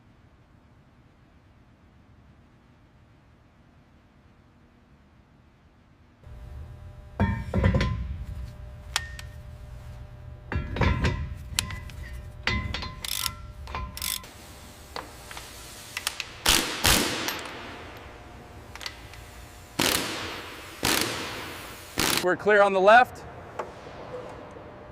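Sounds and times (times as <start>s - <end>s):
low hum: 0.0s - 22.0s
metal clanking and knocking: 7.2s - 8.1s, 10.5s - 14.0s.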